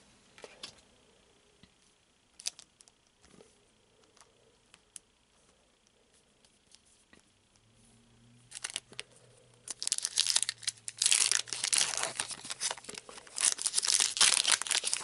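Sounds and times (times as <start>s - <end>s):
foil wrapper tearing and crinkling: 8.5s - 8.8s, 9.7s - 15.0s.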